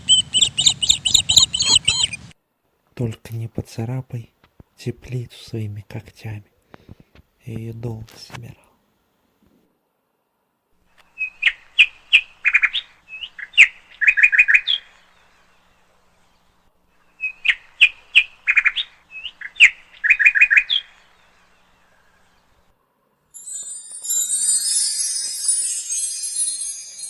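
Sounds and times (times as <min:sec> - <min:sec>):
songbird singing: 0:00.0 - 0:02.4, 0:11.0 - 0:22.7.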